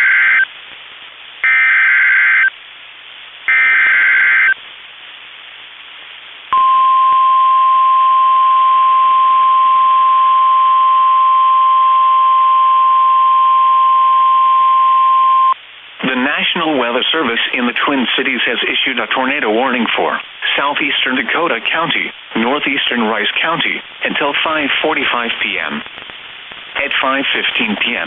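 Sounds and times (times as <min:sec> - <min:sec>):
steady warning alarm tone: 0:01.4 - 0:02.5, 0:03.5 - 0:04.6.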